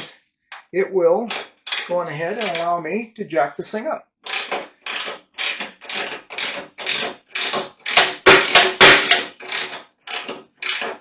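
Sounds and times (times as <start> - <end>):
ratcheting wrench cranking: 1.3 - 2.7, 4.2 - 11.0.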